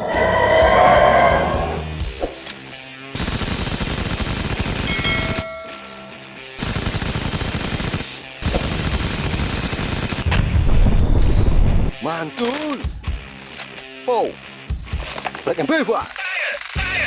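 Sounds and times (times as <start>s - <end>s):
toy machine gun firing: 3.2s - 5.5s, 6.6s - 10.3s, 16.0s - 17.0s.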